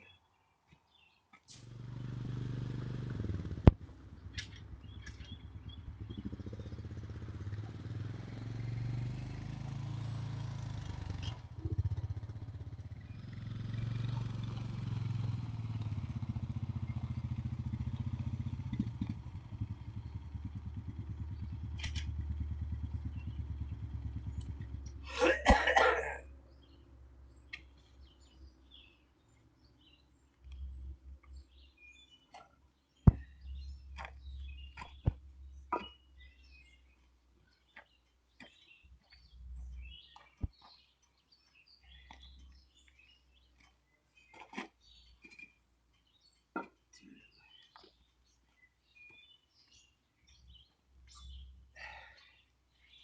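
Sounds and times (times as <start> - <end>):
engine running roughly: 1.6 - 26.8.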